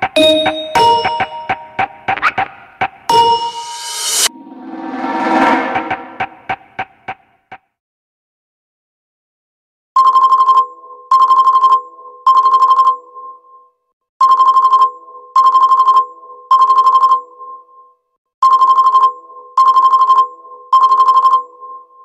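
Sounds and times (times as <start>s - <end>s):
trilling electronic phone ring: 0.2s - 1.8s.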